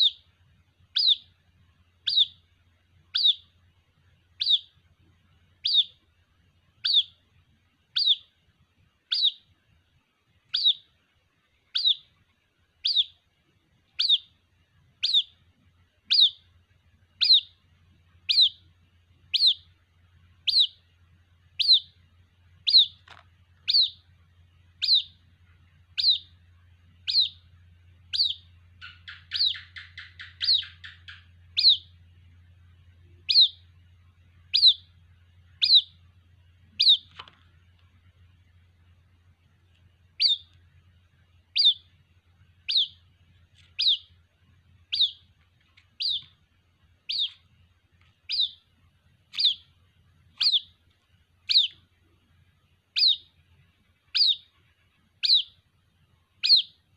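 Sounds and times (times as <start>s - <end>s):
bird chick high peeping: 0.0s - 3.6s, 4.2s - 4.9s, 5.5s - 8.4s, 9.0s - 9.6s, 10.4s - 38.0s, 39.0s - 55.7s, 56.4s - 56.9s
faint low hum: 0.0s - 56.9s
faint chattering bird notes: 0.9s - 1.4s, 2.0s - 2.5s, 3.1s - 3.6s, 4.4s - 4.8s, 5.6s - 6.0s, 6.8s - 7.2s, 7.9s - 8.3s, 9.1s - 9.5s, 10.5s - 10.9s, 11.7s - 12.2s, 13.9s - 14.4s, 15.0s - 15.4s, 16.0s - 16.5s, 17.2s - 17.6s, 18.2s - 18.7s, 19.3s - 19.8s, 20.4s - 20.9s, 21.6s - 22.0s, 22.6s - 24.1s, 24.7s - 25.3s, 25.9s - 26.4s, 27.0s - 32.0s, 33.0s - 33.8s, 34.4s - 36.1s, 36.7s - 37.3s, 40.1s - 40.6s, 41.4s - 42.0s, 42.6s - 44.2s, 44.8s - 46.4s, 47.0s - 47.5s, 48.2s - 48.7s, 49.3s - 50.8s, 51.4s - 52.2s, 52.9s - 53.4s, 54.1s - 55.6s, 56.4s - 56.9s.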